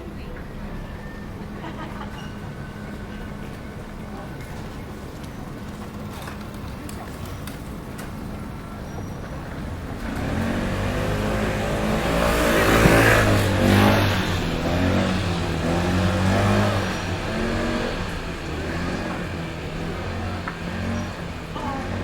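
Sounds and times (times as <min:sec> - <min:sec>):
motor vehicle passing: 0:09.5 - 0:22.0.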